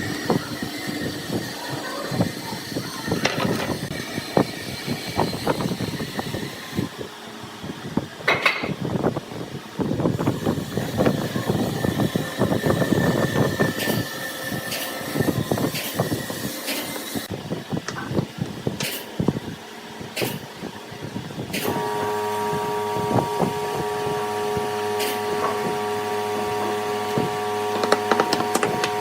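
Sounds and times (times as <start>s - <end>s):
wood lathe cutting: 27.6s - 29.0s.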